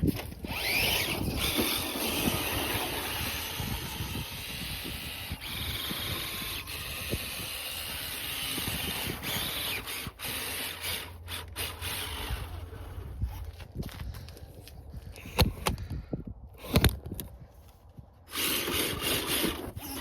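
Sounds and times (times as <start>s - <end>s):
electric motor whining: 0.0s - 13.6s, 18.3s - 20.0s.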